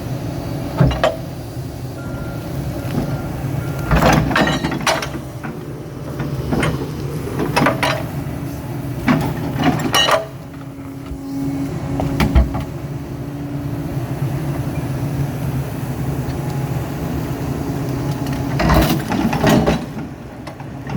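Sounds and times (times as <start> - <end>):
hydraulic whine: 0.0 - 19.6
diesel engine running under load: 0.0 - 20.9
steel clanking and scraping on rock: 3.9 - 5.6, 9.0 - 10.4.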